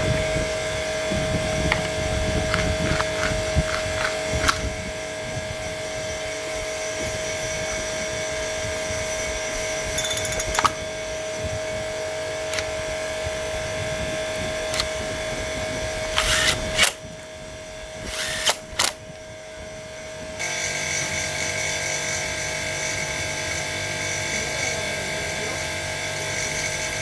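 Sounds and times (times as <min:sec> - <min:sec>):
small petrol engine running: 0:01.4 - 0:04.9, 0:12.4 - 0:17.0, 0:18.0 - 0:19.0
sharp clicks: 0:01.7 - 0:04.7, 0:10.0 - 0:10.8, 0:12.5 - 0:12.8, 0:14.7 - 0:15.0, 0:16.1 - 0:17.0, 0:18.1 - 0:19.0.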